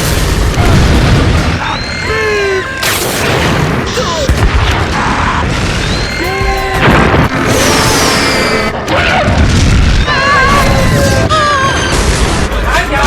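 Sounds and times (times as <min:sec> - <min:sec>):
booms: 0:00.0 - 0:12.6
cartoon sound effects: 0:06.0 - 0:09.4.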